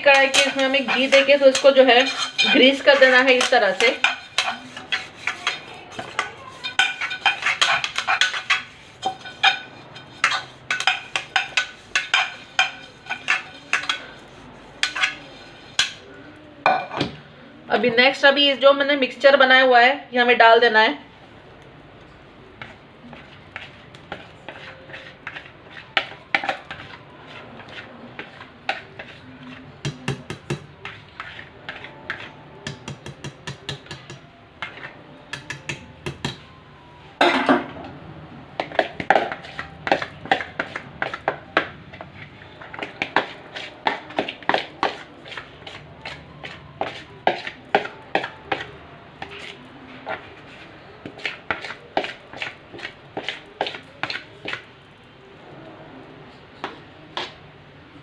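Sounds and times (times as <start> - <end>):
utensil scraping and tapping bowl: 0.0 - 16.1, 22.6 - 36.4, 38.6 - 54.7.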